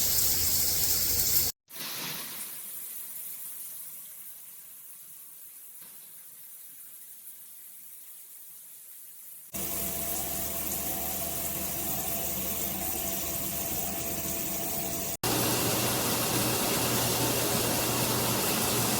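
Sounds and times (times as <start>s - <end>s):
shower head spraying water: 0.0s - 3.4s, 9.6s - 18.9s.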